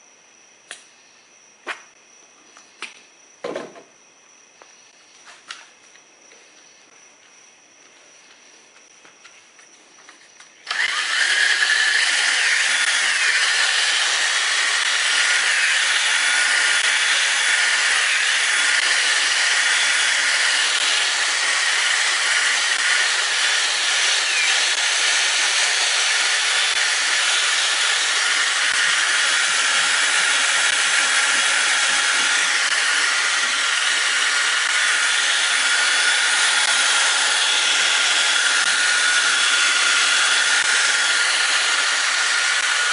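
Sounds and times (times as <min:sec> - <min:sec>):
cordless drill buffing plastic: 0:10.7 - 0:42.9.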